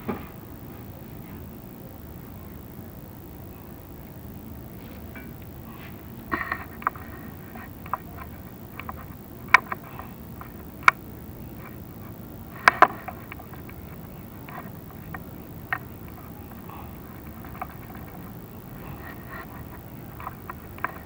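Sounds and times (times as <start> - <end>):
steady low rumble: 0.0 - 21.0
camera knocking on clay tiles: 6.3 - 21.0.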